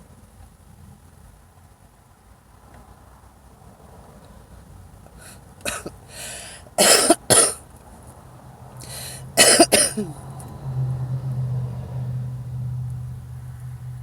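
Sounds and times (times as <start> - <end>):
woman coughing: 5.7 - 7.6, 9.4 - 10.2.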